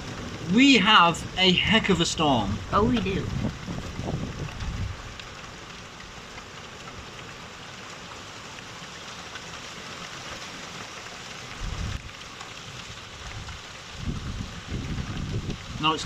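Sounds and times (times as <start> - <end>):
low thunder rumble: 0.0 - 5.2, 13.4 - 15.8
heavy rain and hail: 0.0 - 16.0.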